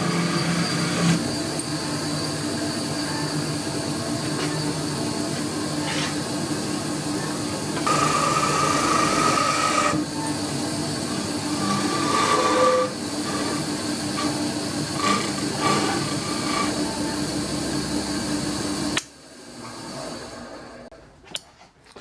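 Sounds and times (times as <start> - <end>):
power tool cutting with whine: 0.0 - 5.2, 7.3 - 18.4.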